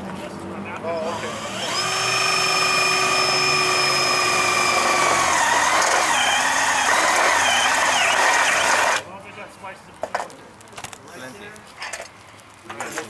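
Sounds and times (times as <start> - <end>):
power tool whining: 0.9 - 9.0.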